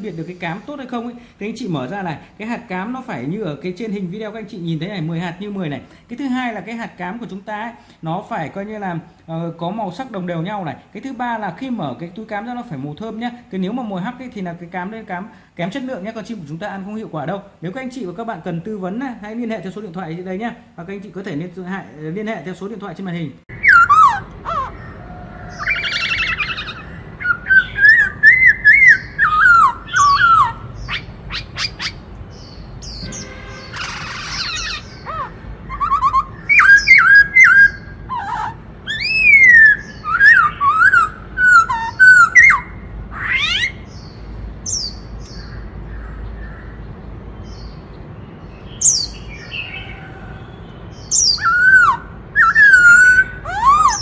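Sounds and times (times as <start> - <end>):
bird singing whistled phrases: 23.5 - 32.0, 32.8 - 43.8, 51.0 - 54.0.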